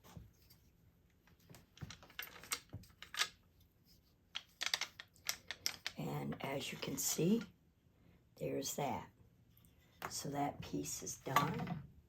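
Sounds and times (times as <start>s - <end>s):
wooden pieces clicking and knocking: 1.2s - 3.5s, 4.2s - 6.4s.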